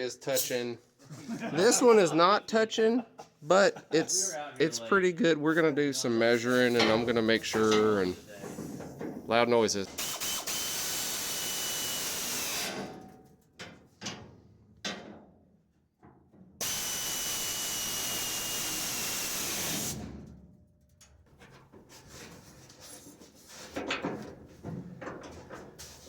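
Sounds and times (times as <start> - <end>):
power tool whining: 10.0 - 12.9, 16.6 - 20.0
light knocks and clatter: 23.6 - 26.0.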